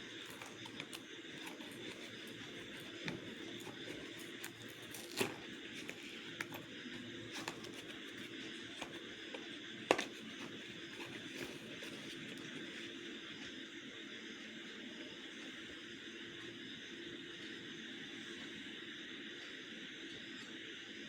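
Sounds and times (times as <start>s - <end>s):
packaging rustling and scraping: 0.0s - 12.9s.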